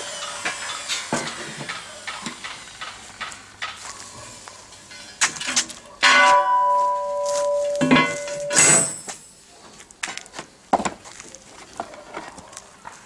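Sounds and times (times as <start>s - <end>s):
metal knocks and clatter: 4.9s - 9.1s
steel plate clanging and ringing: 6.0s - 9.4s.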